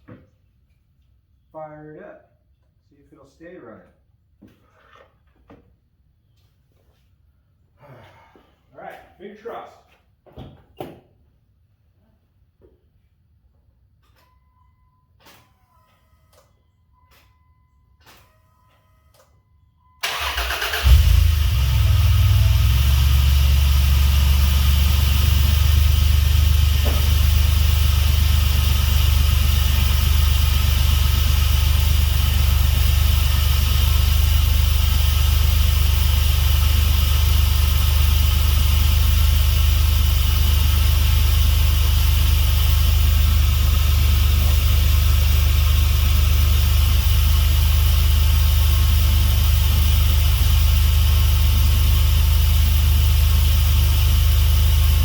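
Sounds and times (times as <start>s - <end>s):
car engine idling: 20.0s - 55.0s.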